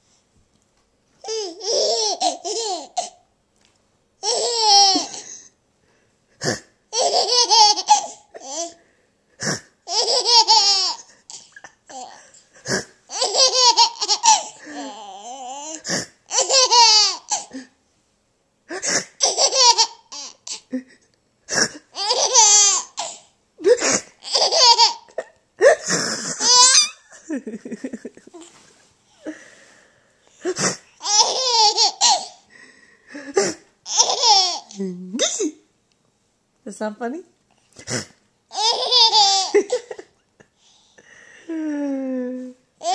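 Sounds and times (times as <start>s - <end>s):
baby laughing: 1.2s - 3.2s, 4.2s - 5.4s, 6.9s - 8.8s, 9.8s - 17.6s, 19.1s - 20.7s, 21.9s - 28.6s, 30.4s - 32.4s, 33.3s - 35.4s, 38.5s - 40.2s.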